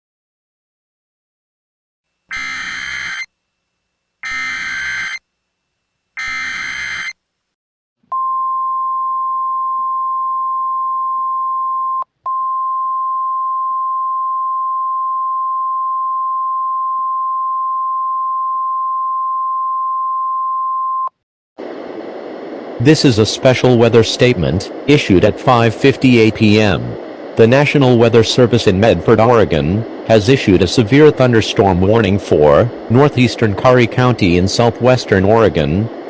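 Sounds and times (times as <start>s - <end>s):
buzzing digital data bursts: 2.3s - 3.3s, 4.2s - 5.2s, 6.2s - 7.2s
steady high-pitched alarm tone: 2.3s - 3.3s, 4.2s - 5.2s, 6.2s - 7.2s.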